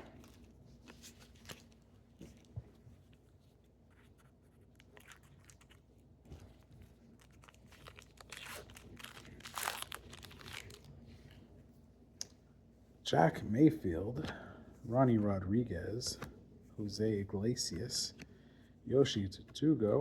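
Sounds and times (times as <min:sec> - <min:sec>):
wrapper crinkling: 0:07.1 - 0:11.0
wrapper tearing: 0:07.2 - 0:10.9.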